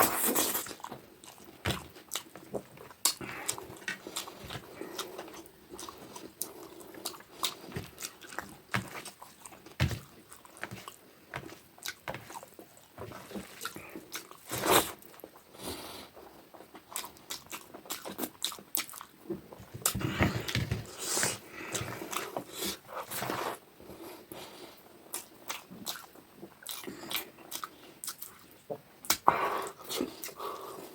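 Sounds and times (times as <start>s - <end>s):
person chewing: 0.0s - 15.4s, 16.5s - 23.5s, 25.0s - 30.9s.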